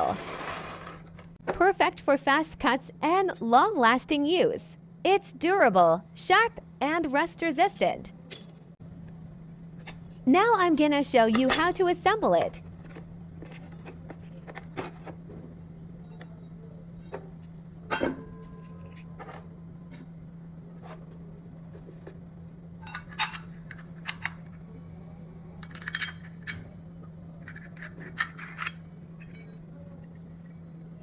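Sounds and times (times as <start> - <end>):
steady low hum: 0.1 - 31.0
metal parts clinking: 7.7 - 8.6, 22.8 - 24.7, 25.6 - 26.7, 27.4 - 29.8.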